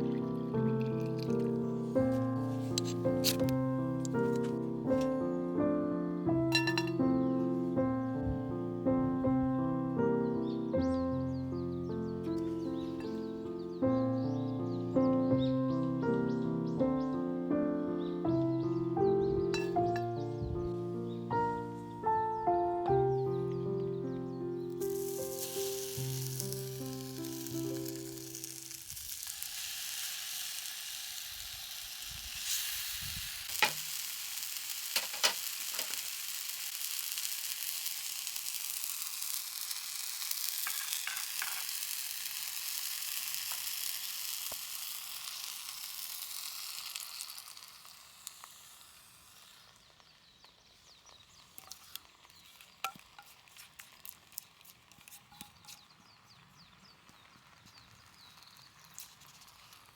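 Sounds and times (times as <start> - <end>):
food sizzling in a pan: 0.0 - 5.1, 6.5 - 7.0, 19.4 - 20.4, 24.6 - 56.3, 57.0 - 59.9
background music: 0.0 - 28.6.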